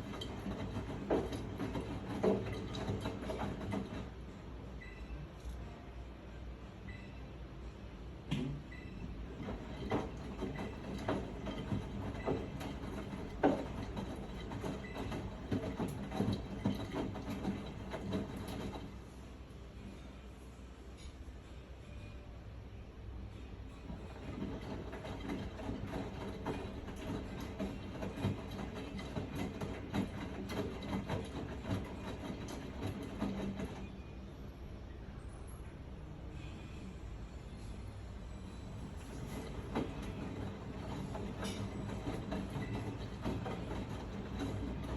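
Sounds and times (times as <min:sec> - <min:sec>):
knocks and rattles: 0:00.0 - 0:04.2, 0:09.4 - 0:19.0, 0:23.9 - 0:33.9, 0:38.8 - 0:44.9
washing machine drum rumbling: 0:00.0 - 0:04.2, 0:09.3 - 0:19.0, 0:23.8 - 0:33.9, 0:38.8 - 0:44.9.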